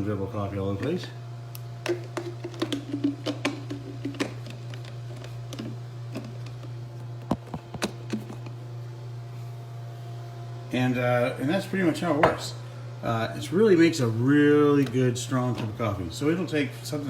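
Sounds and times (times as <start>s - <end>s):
steady low hum: 0.0s - 17.0s
clicks and knocks of coffee maker parts: 1.8s - 8.5s.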